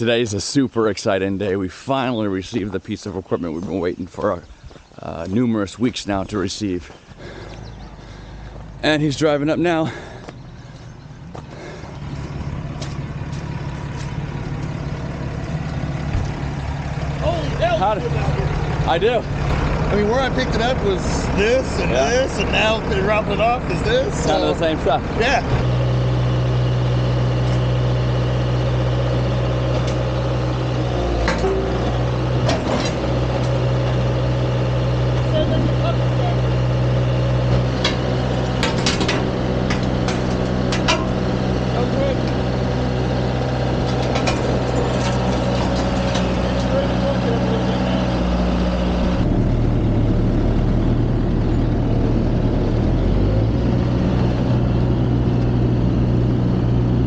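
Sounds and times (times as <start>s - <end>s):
heavy engine idling: 6.8s - 57.0s
sharp clicks or knocks: 37.5s - 41.2s.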